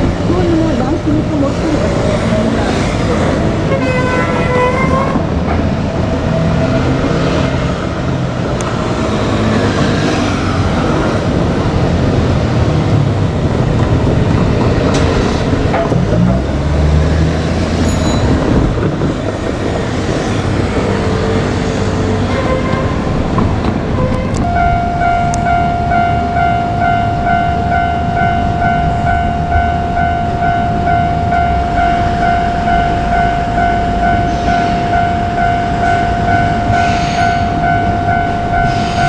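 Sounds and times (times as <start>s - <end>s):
cars and trucks passing: 0.0s - 39.0s
brief pitched tone: 24.4s - 39.0s.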